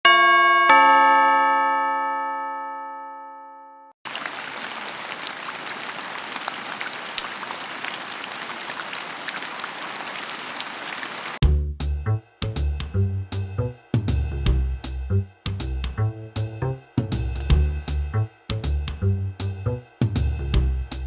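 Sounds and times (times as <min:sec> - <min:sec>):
heavy rain: 0:04.1 - 0:11.4.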